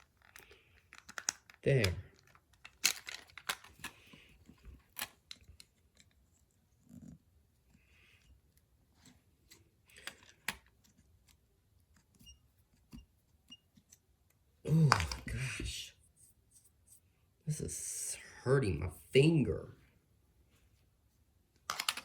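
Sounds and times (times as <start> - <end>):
plastic toy parts clicking: 0.0 - 4.2, 4.8 - 6.2, 21.7 - 22.0.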